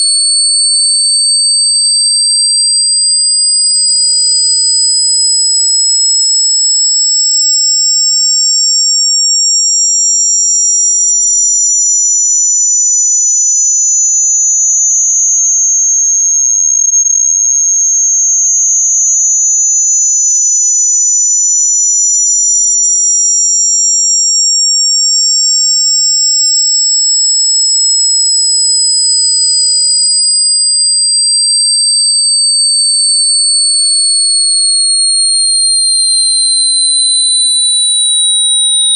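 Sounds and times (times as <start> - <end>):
high-pitched electronic tones gliding: 36.5 - 38.9.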